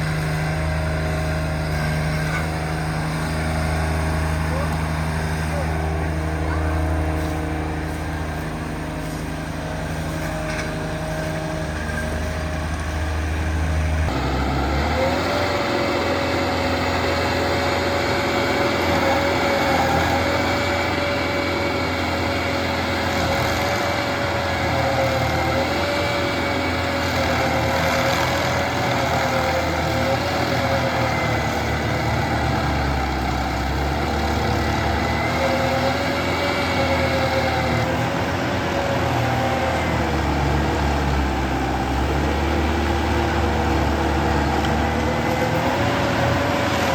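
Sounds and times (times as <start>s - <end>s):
large engine humming: 0.0s - 46.9s.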